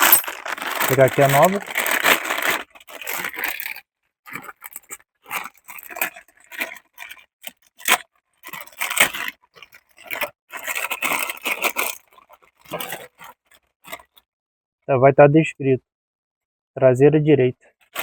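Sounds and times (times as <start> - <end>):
packaging rustling and tearing: 0.0 - 7.2, 7.8 - 14.1.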